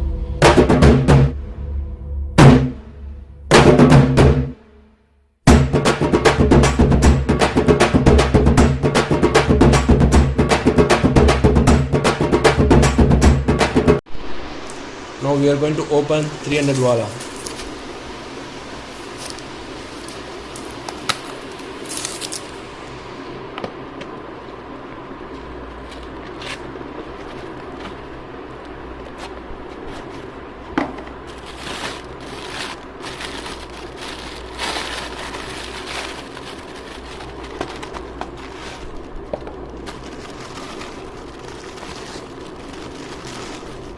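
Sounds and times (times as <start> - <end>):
wrapper crinkling and tearing: 16.2 - 17.9, 18.5 - 23.1, 25.3 - 43.9.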